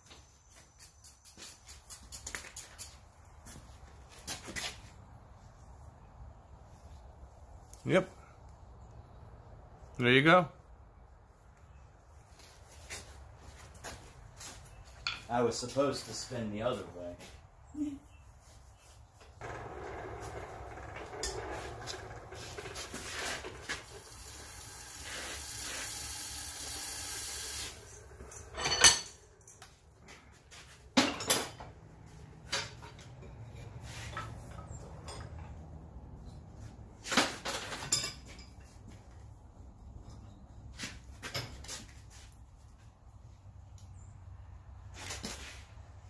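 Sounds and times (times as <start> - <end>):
steady hiss at forge: 23.9 - 27.9
sharp metal clanks: 28.3 - 29.6.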